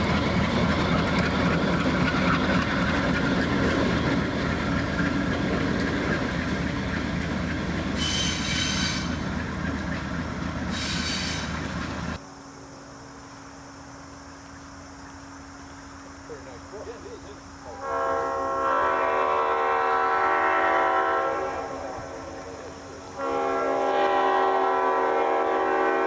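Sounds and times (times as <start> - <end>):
diesel locomotive engine running: 0.0 - 12.2
train wheels on rail: 0.0 - 12.2.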